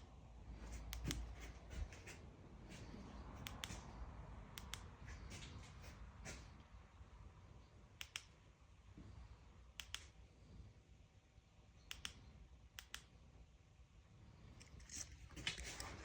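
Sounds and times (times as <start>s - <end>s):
light sharp clicks: 0.8s - 1.5s, 3.4s - 5.6s, 8.0s - 8.4s, 9.8s - 10.2s, 11.8s - 13.1s.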